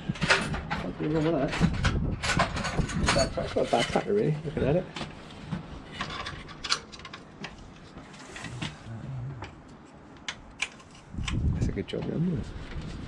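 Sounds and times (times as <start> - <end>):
faint murmur of voice: 8.4 - 9.6.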